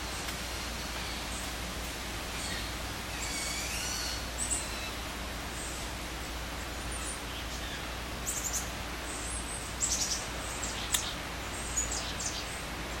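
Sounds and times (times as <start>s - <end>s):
steady hiss: 0.0s - 13.0s
small birds chirping: 6.6s - 13.0s.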